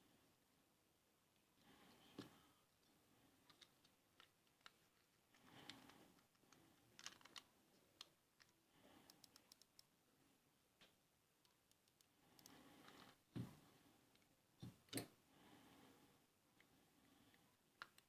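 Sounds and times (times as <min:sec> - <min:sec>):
computer mouse clicks: 0:05.6 - 0:09.9, 0:11.4 - 0:13.2, 0:17.8 - 0:18.0.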